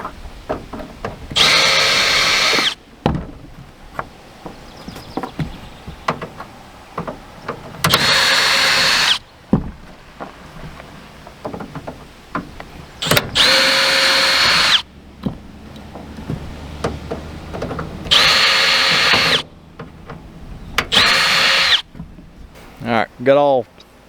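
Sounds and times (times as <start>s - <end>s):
light clicks and knocks: 0.0s - 22.8s
power drill bursts: 1.4s - 2.8s, 7.9s - 9.2s, 13.0s - 14.9s, 18.1s - 19.4s, 20.9s - 21.9s.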